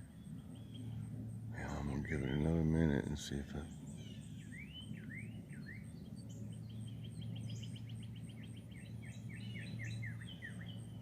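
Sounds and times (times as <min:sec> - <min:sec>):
faint low hum: 0:00.0 - 0:11.0
songbirds singing: 0:00.0 - 0:11.0.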